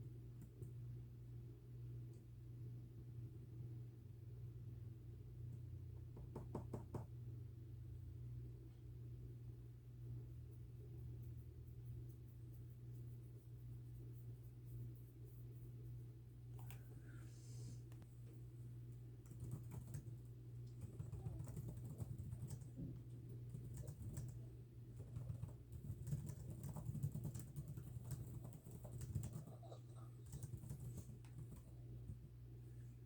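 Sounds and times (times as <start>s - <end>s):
steady low hum: 0.0s - 33.0s
keyboard typing: 19.2s - 32.2s.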